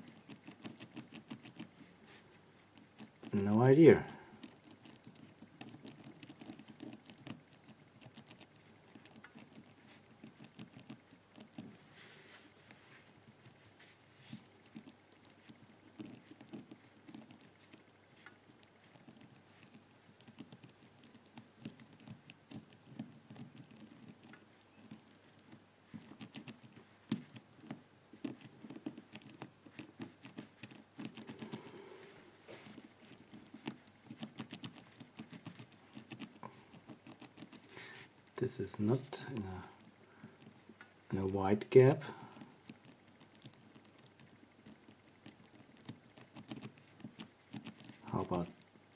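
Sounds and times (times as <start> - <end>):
padlock wheels clicking and rattling: 2.8 - 11.6, 14.6 - 17.8, 18.6 - 31.6, 32.6 - 38.4.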